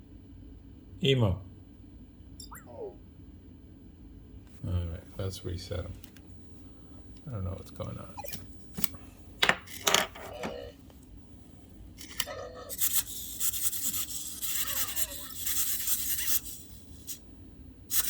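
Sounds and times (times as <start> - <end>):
scratchy rubbing and scraping: 12.0 - 17.2.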